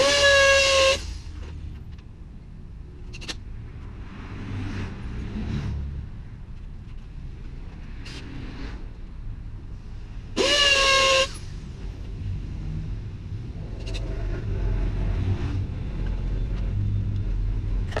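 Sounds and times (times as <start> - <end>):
car horn honking: 0.0 - 1.3, 10.4 - 11.5
road traffic rumble: 0.0 - 18.0.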